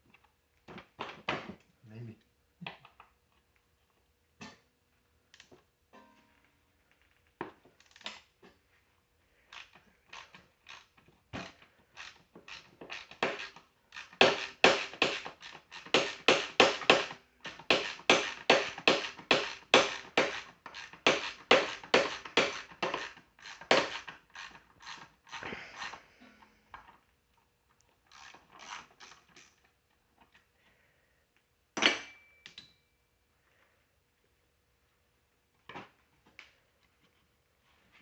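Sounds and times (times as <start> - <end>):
ratchet wrench clicking: 9.5 - 10.9, 12.0 - 17.1, 17.7 - 26.0, 28.1 - 29.6.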